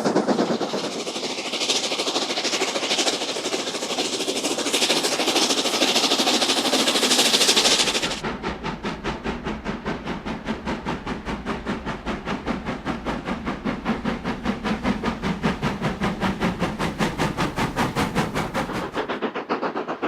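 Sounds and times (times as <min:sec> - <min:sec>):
steam locomotive exhaust chuffing: 0:00.0 - 0:20.0.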